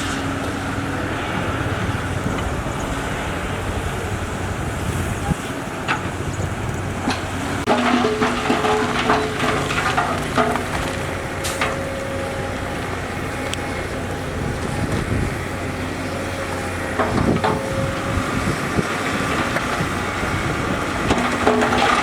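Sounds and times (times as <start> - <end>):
diesel engine running: 0.0 - 22.0
metal clanks and knocks: 7.0 - 13.0, 16.5 - 22.0.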